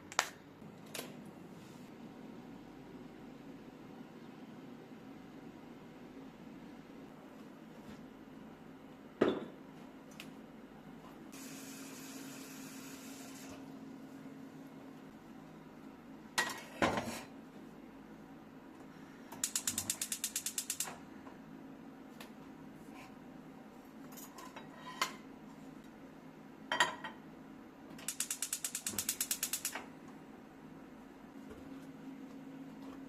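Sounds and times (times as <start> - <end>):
faint steady hum: 0.0 - 33.0
rapid ratchet-like clicking: 19.4 - 21.0, 28.0 - 29.8.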